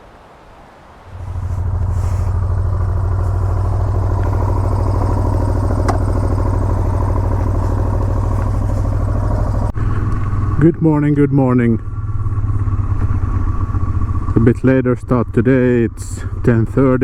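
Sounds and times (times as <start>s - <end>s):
motorcycle engine idling: 1.1s - 17.0s.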